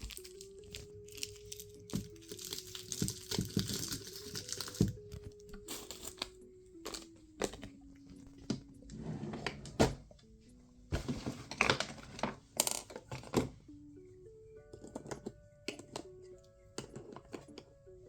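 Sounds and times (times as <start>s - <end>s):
wrappers crinkling: 0.0s - 7.7s
soft background music: 0.0s - 18.0s
clicks and knocks of items: 1.4s - 6.3s.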